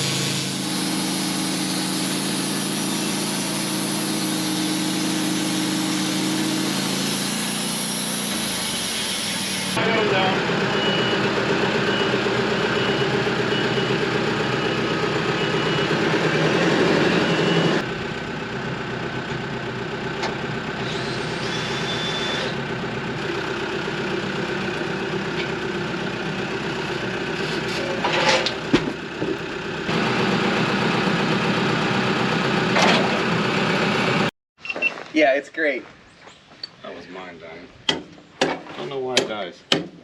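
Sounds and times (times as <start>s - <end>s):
engine running steadily: 0.0s - 34.3s
sharp knocks: 37.9s - 40.0s.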